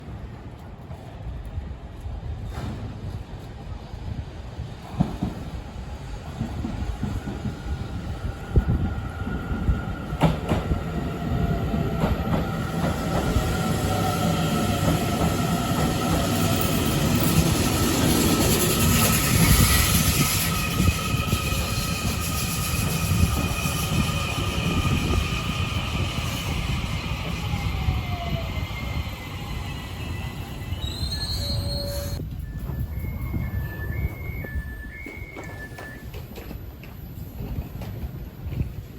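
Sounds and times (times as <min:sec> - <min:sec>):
electric train whining: 0:08.0 - 0:37.5.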